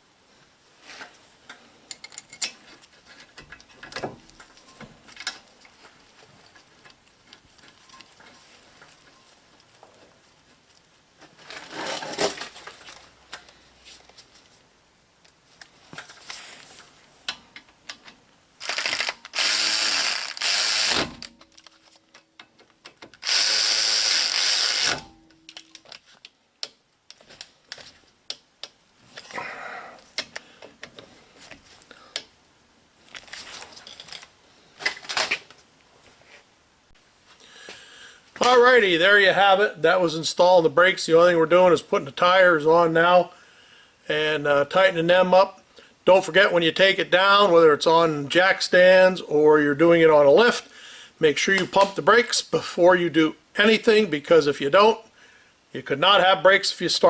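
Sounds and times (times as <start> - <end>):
tools and parts clanking: 1.0 - 9.9, 33.1 - 35.6
power tool driving bolts: 18.6 - 21.6, 22.9 - 25.7.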